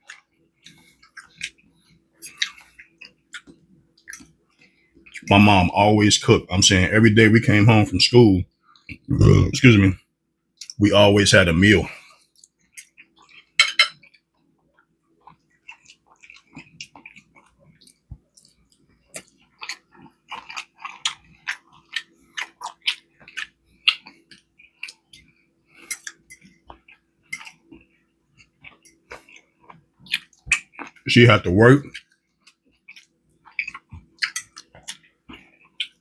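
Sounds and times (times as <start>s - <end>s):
close chewing: 12.4s - 36.0s
cutlery clinking against a dish: 13.6s - 14.1s, 34.2s - 34.7s.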